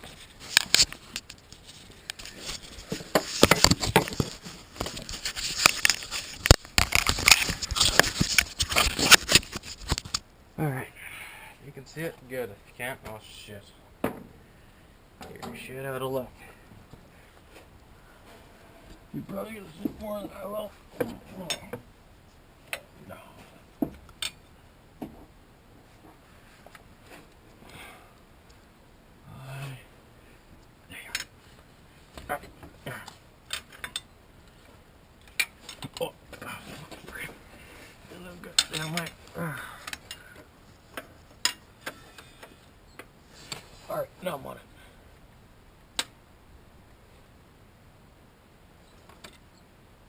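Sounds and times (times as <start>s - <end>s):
objects rustling and scraping: 0.0s - 10.3s, 16.4s - 22.4s, 23.1s - 27.9s, 30.9s - 44.2s.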